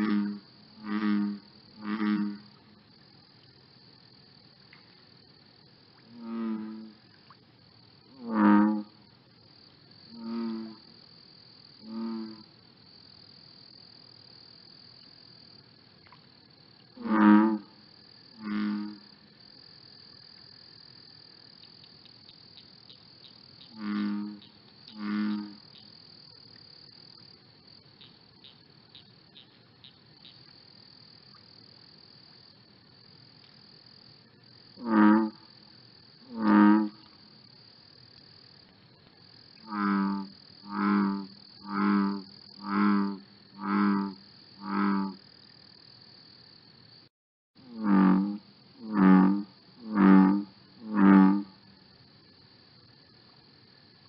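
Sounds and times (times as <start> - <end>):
low croaking calls: 0.0 - 2.6, 21.6 - 26.4
high-pitched insect chorus: 0.0 - 54.0
faint ticks: 4.6 - 5.1, 16.0 - 17.5, 21.5 - 27.2, 33.4 - 33.7, 38.0 - 45.2.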